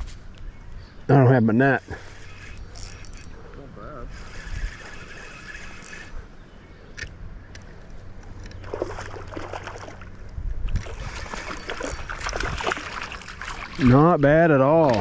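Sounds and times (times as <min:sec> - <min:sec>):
river water splashing: 0:08.3 - 0:15.0.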